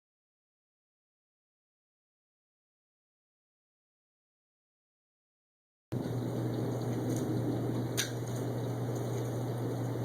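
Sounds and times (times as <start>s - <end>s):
low hum with hiss: 5.9s - 10.0s.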